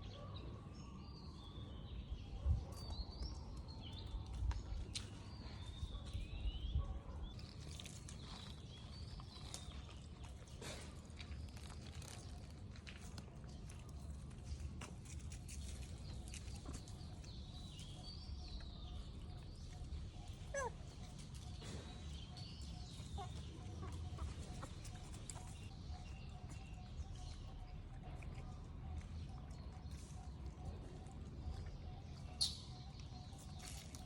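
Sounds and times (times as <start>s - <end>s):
birds chirping: 15.5s - 34.0s.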